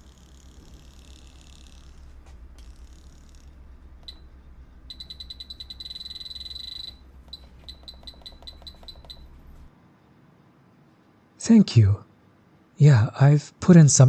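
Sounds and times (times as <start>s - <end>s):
tattoo machine buzzing: 0.0s - 4.2s, 4.9s - 9.3s
high-pitched chirping: 4.9s - 9.4s.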